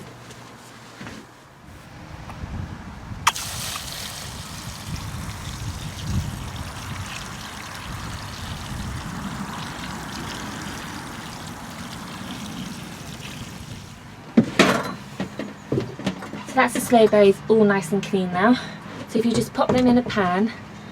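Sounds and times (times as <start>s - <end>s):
tap water running into colander: 3.3s - 14.0s.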